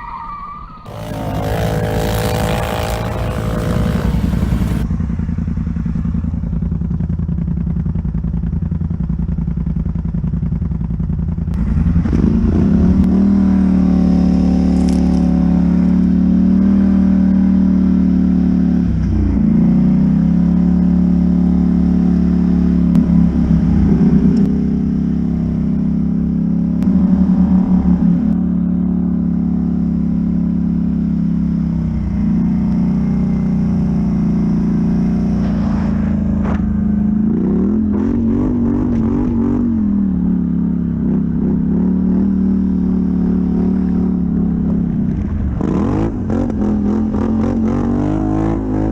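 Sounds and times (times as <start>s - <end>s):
atv engine revving: 0.9s - 4.9s, 31.0s - 48.9s.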